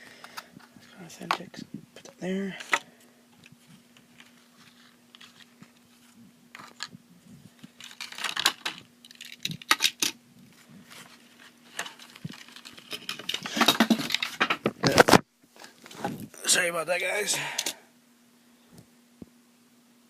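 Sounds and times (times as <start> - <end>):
faint steady hum: 0.0 - 20.0
packaging clicks and rustles: 4.0 - 6.9, 7.6 - 10.2, 10.8 - 16.1.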